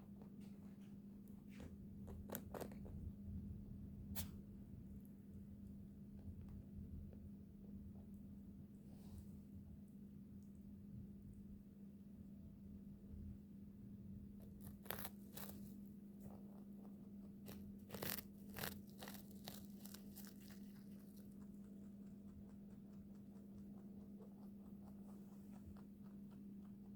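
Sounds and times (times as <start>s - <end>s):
rabbit making crunchy clicks: 0.0s - 3.2s, 14.4s - 26.9s
faint steady hum: 0.0s - 26.9s.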